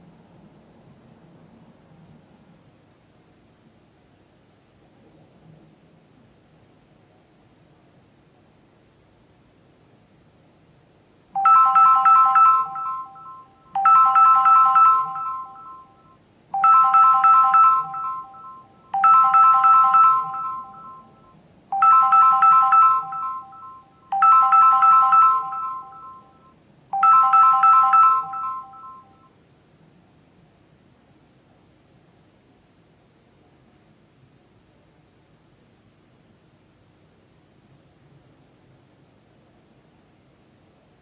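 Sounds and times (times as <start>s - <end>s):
electronic ringtone trill: 11.4s - 29.3s.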